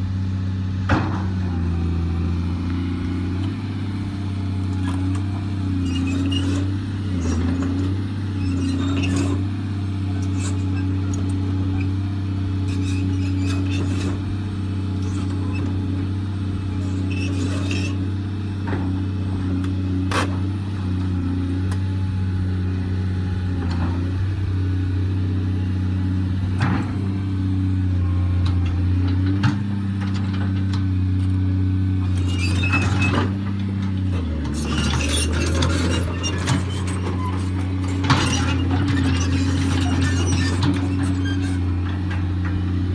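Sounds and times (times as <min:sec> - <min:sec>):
excavator diesel engine running: 0:00.0 - 0:42.9.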